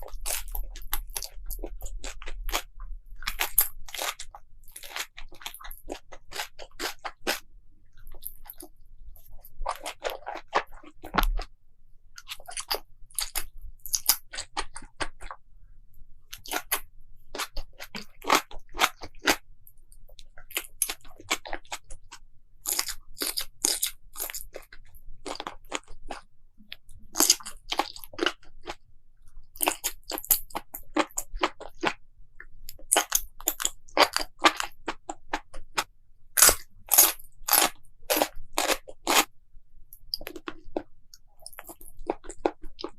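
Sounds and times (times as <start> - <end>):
crunchy chewing and biting: 0.0 - 7.4, 8.1 - 11.5, 16.3 - 19.4, 22.6 - 26.3, 27.1 - 28.8, 32.7 - 39.3, 40.0 - 42.9.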